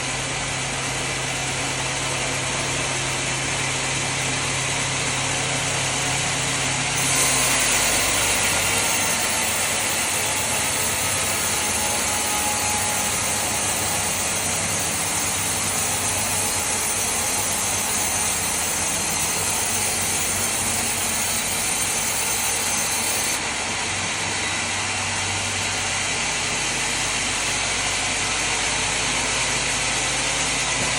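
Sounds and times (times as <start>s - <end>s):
sawmill machinery humming: 0.0s - 30.9s
bright hiss: 7.0s - 13.8s.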